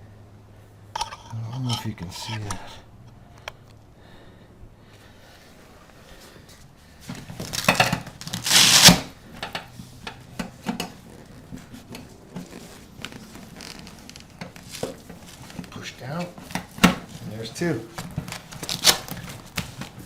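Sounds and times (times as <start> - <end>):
bag material rustling: 11.0 - 15.8.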